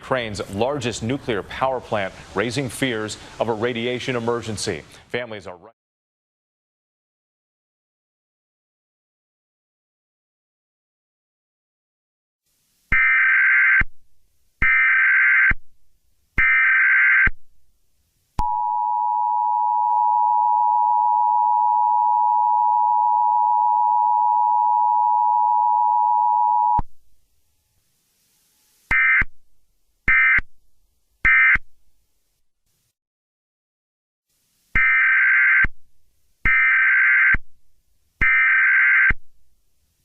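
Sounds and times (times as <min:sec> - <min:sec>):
two-tone attention signal: 0:18.4 - 0:26.8.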